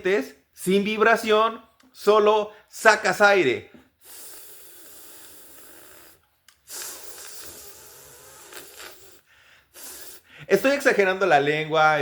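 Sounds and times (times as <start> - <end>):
person hissing th sound: 4.0 - 10.7.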